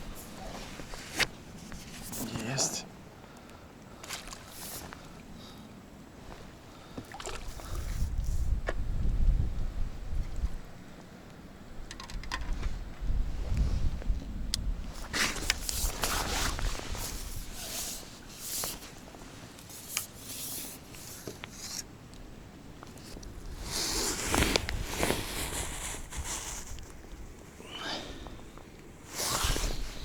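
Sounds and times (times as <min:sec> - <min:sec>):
rustling and handling noises: 0:00.0 - 0:02.8, 0:15.0 - 0:22.2.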